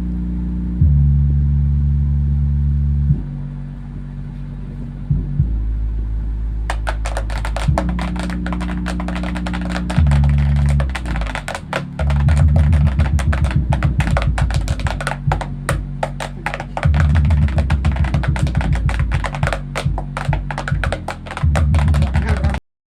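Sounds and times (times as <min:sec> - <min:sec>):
bass-heavy music with drum beat: 0:05.1 - 0:22.6.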